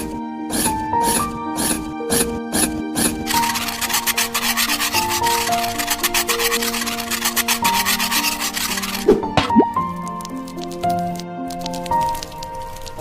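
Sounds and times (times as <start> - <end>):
background music: 0.0 - 13.0
rapid rasping scraping strokes: 0.5 - 9.6.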